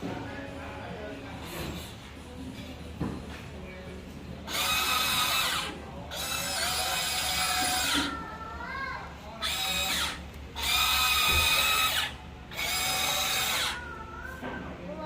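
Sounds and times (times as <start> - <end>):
electric gear motors whining: 4.4 - 8.2, 9.3 - 14.2.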